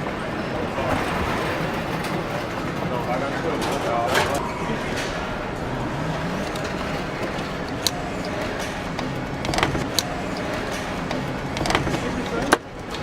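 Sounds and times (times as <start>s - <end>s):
machinery din: 0.0s - 13.0s
sharp metallic clicks: 6.4s - 12.6s.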